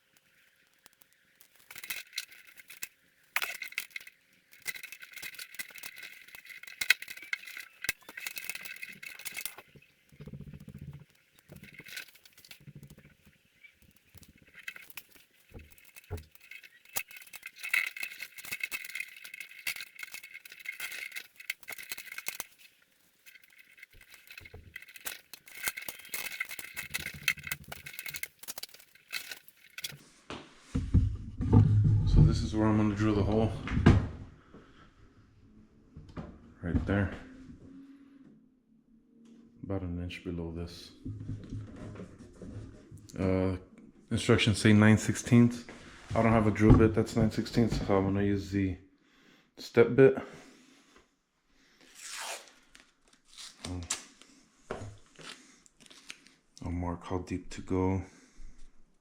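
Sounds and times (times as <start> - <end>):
small parts rattling and clicking: 0.0 - 30.0.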